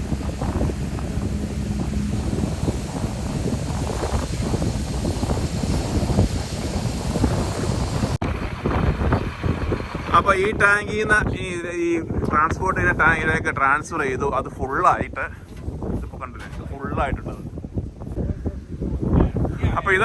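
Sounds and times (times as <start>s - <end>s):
machinery running: 0.0s - 8.6s
wind buffeting microphone: 0.0s - 20.0s.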